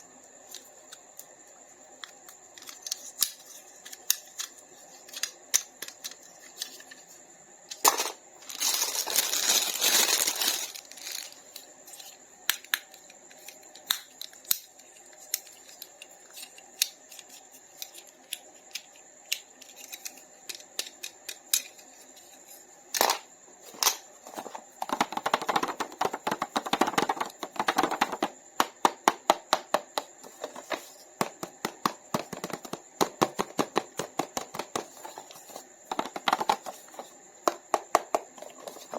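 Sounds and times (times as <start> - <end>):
packaging rustling or tearing: 8.4 - 11.4
packaging clicks and taps: 24.8 - 35.2, 35.9 - 38.9.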